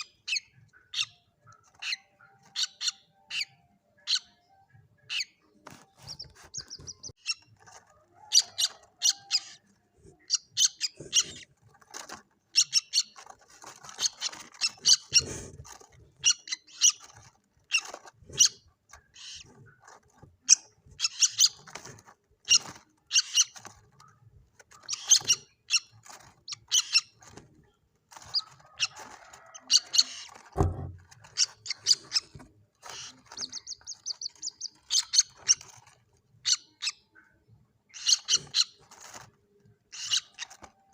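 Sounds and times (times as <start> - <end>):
bird chick chirping: 0.0 - 40.9
low thump: 30.6 - 31.0.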